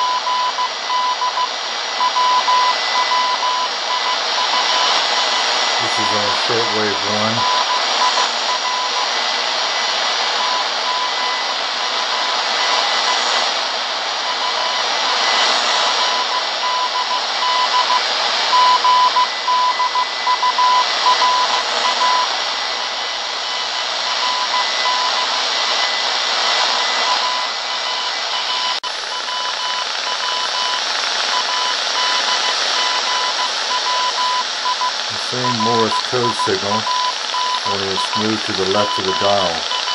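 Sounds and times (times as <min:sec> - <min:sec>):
morse code tone: 0:00.0 - 0:09.1, 0:16.0 - 0:22.3, 0:23.5 - 0:25.4, 0:27.0 - 0:39.9
static hiss: 0:00.7 - 0:39.9.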